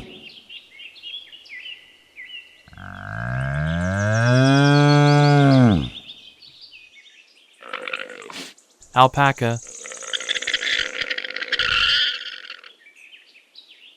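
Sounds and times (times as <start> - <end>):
small birds chirping: 0.0 - 13.9
bull mooing: 2.7 - 6.0.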